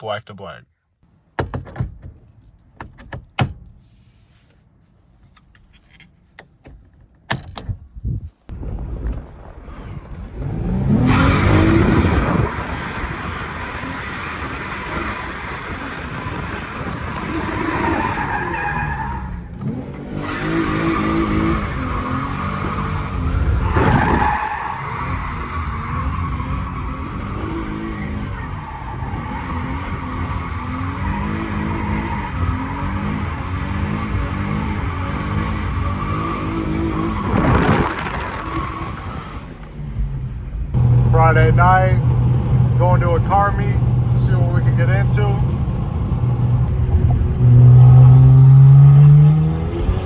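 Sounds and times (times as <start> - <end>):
car engine revving hard: 10.3 - 39.5, 40.7 - 50.0
tyres squealing: 17.2 - 39.2.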